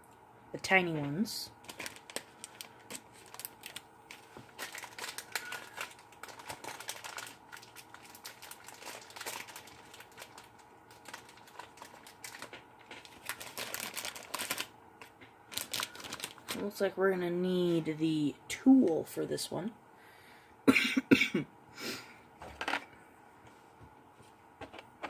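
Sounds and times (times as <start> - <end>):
plastic rustling: 0.8 - 16.9.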